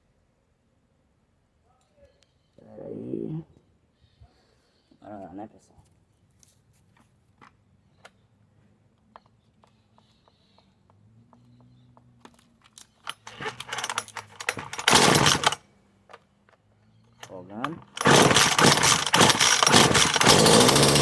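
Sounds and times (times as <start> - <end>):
chainsaw starter cord yanked: 12.3 - 15.6, 17.1 - 21.0.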